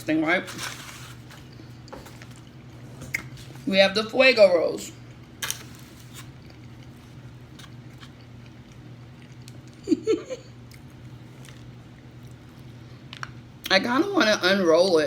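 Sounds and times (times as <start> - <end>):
low steady hum: 0.0 - 15.0
food being handled: 0.2 - 3.7.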